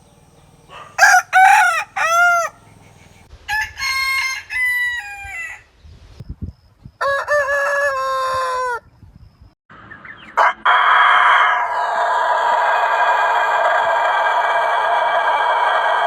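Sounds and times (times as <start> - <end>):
rooster crowing: 0.7 - 2.8, 3.5 - 5.7, 7.0 - 8.8, 10.4 - 16.0.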